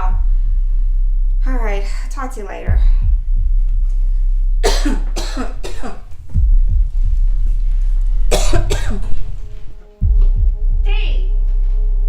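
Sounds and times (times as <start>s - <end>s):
low background music: 0.0s - 12.0s
woman coughing: 4.6s - 6.2s, 8.3s - 9.3s.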